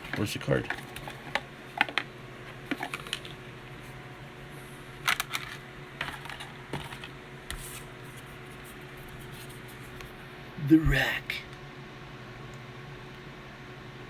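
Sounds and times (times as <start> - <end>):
toy packaging clicks and rustles: 0.1 - 2.1, 2.7 - 3.4, 5.0 - 7.2.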